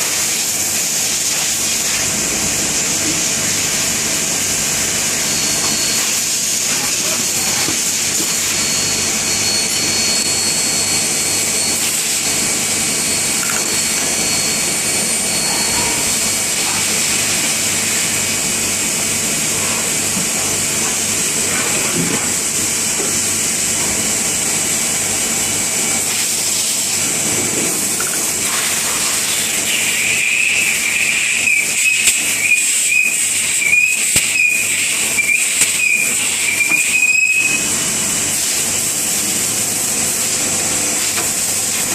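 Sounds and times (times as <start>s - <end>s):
high wavering whine: 4.6s - 20.4s
machine tool high hiss: 27.8s - 41.9s.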